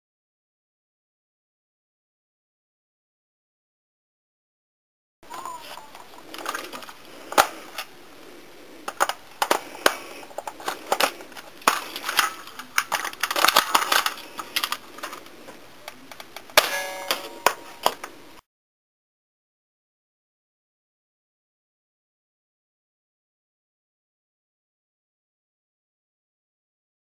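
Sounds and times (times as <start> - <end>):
plastic and metal parts clicking: 5.9 - 7.9, 8.8 - 18.1
ringing metallic clang: 16.6 - 17.8.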